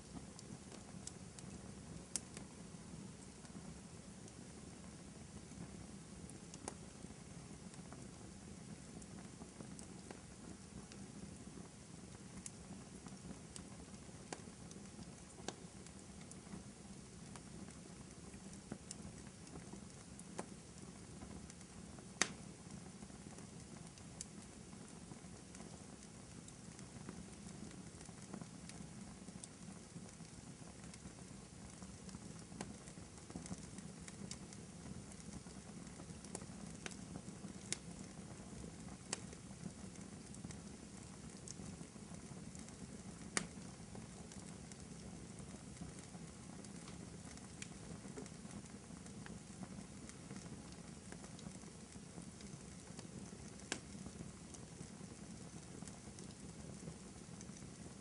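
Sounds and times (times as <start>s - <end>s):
wood fire crackling: 0.0s - 58.0s
sharp pops and snaps: 22.2s - 22.5s, 37.6s - 37.9s, 42.6s - 43.6s, 53.5s - 53.9s.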